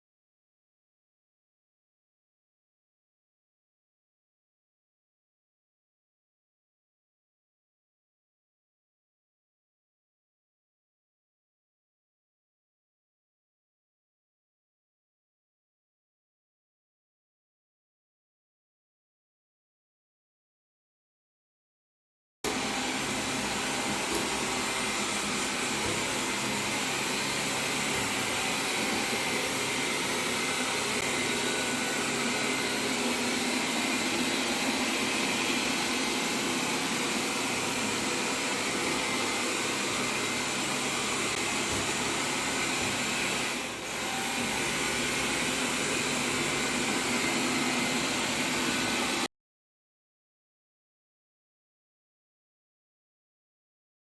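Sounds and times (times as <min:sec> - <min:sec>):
robot vacuum whirring: 0:22.5 - 0:49.3.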